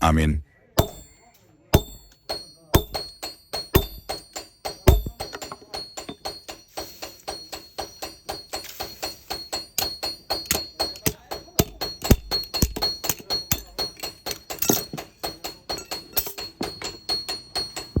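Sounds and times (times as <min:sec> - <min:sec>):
fast sharp knocks: 0:00.8 - 0:01.2, 0:01.8 - 0:15.7
heavy low thuds: 0:04.9 - 0:05.2.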